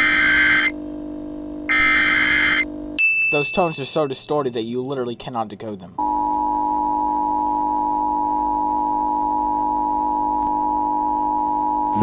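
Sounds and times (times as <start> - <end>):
two-tone electronic alert tone: 0.0 - 0.7, 1.7 - 2.6
voice message: 0.0 - 0.7, 1.7 - 2.6.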